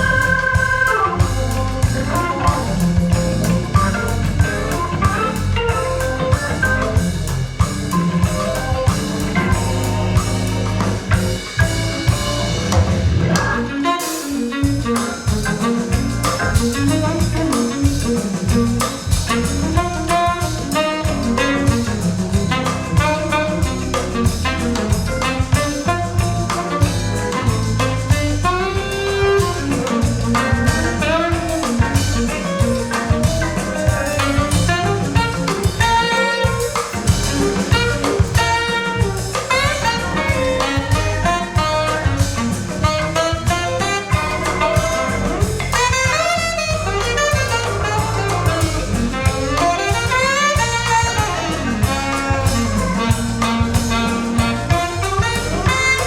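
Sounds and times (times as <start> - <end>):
jazz with horns and drums: 0.0 - 56.0.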